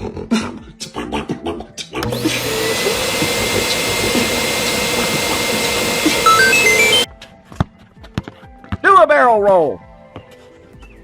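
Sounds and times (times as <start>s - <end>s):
motor rushing with thin whine: 2.0s - 7.1s.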